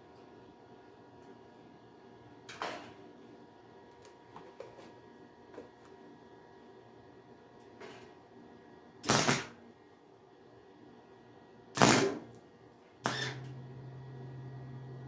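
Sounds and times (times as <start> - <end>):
wire-feed welder bursts: 9.0 - 9.6, 11.8 - 12.3, 13.0 - 13.5.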